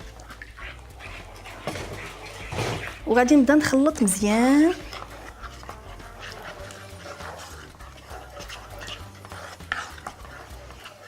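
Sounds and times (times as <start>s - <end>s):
custard stirred in a saucepan: 0.0s - 11.0s.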